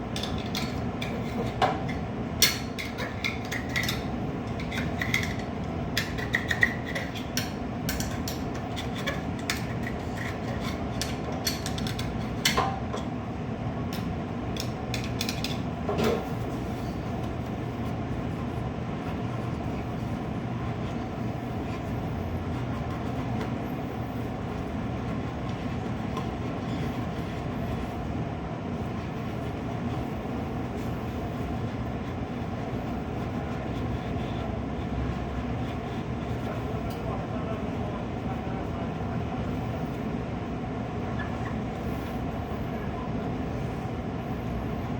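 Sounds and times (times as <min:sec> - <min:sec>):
low mechanical hum: 0:00.0 - 0:44.9.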